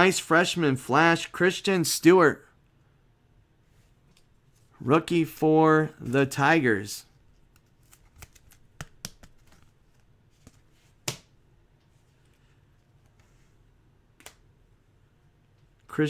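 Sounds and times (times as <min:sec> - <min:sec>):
cards clicking and tapping: 0:07.4 - 0:11.4.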